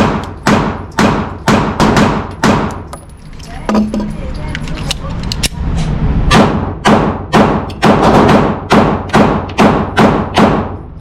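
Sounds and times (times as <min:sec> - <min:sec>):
pistol shots echoing: 0:00.0 - 0:02.9, 0:06.3 - 0:10.8.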